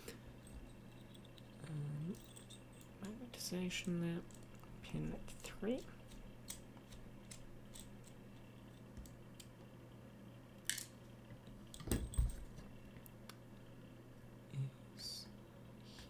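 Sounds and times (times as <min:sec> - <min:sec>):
faint steady hum: 0:00.0 - 0:16.0
small metal clicks: 0:05.3 - 0:09.6.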